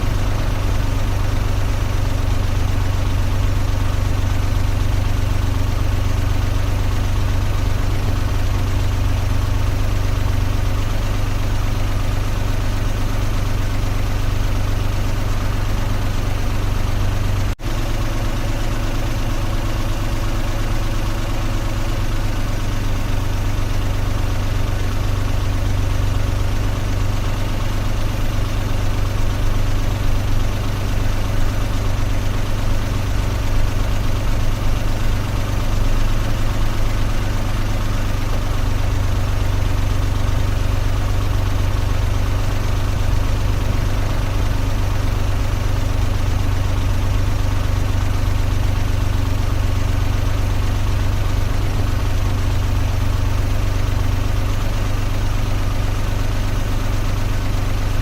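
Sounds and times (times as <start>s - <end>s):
car engine running steadily: 0.0s - 58.0s.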